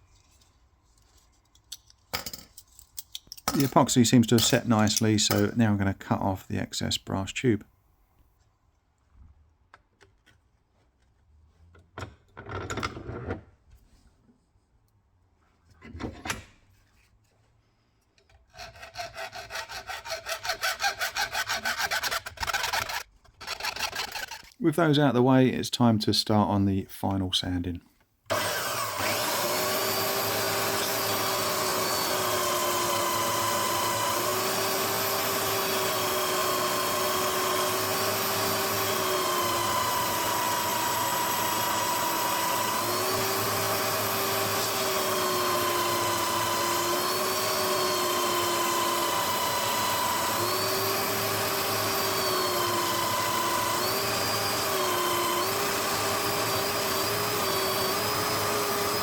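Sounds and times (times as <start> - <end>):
electric bench sander whine: 28.3 - 59.0.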